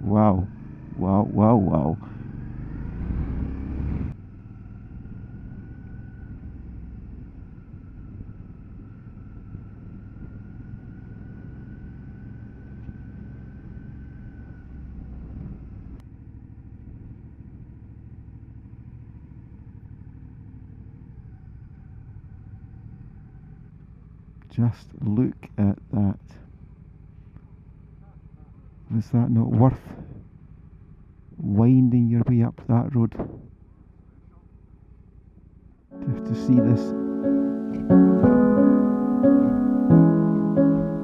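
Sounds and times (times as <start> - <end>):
motorcycle engine running: 0.0 - 24.5, 26.4 - 29.1, 29.8 - 31.9, 33.2 - 35.9.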